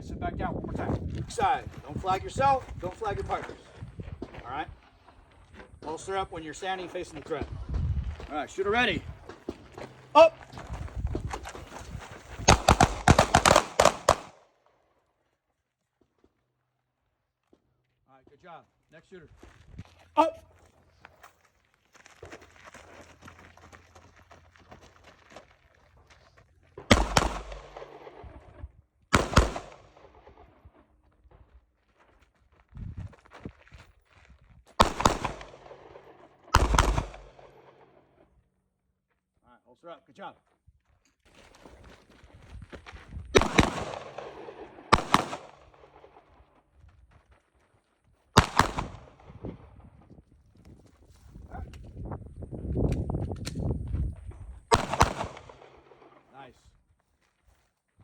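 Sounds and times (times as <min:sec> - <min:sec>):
handgun shots with echo: 0:12.5 - 0:14.4, 0:26.9 - 0:28.2, 0:29.1 - 0:30.1, 0:34.8 - 0:37.8, 0:43.4 - 0:45.7, 0:48.4 - 0:49.2, 0:54.7 - 0:55.8.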